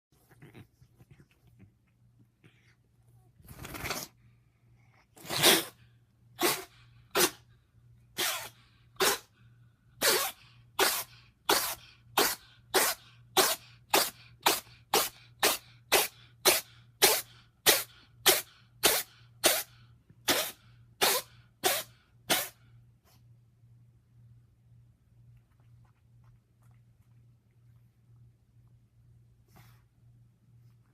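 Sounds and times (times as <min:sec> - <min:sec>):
cat sneezing: 0:03.5 - 0:04.2, 0:05.1 - 0:09.4, 0:10.0 - 0:23.2.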